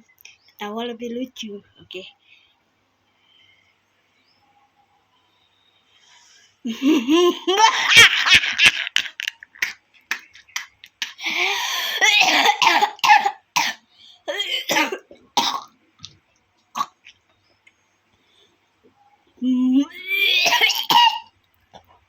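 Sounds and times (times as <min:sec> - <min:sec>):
person laughing: 0:06.7 - 0:11.4
person coughing: 0:11.2 - 0:15.7, 0:20.3 - 0:21.3.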